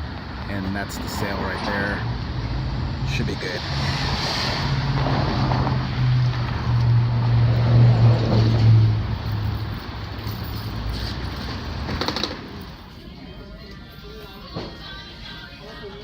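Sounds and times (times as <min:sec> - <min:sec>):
car engine humming: 0:04.5 - 0:13.0.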